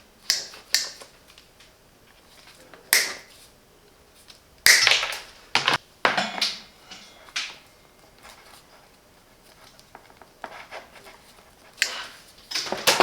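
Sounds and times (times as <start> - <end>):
hand tools clicking and clacking: 4.7 - 7.7, 11.7 - 13.0.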